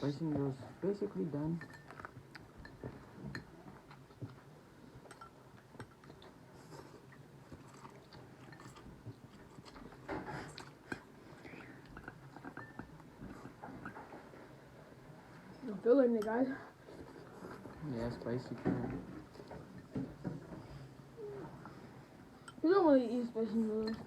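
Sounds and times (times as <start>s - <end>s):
people chewing and biting: 5.1s - 14.1s.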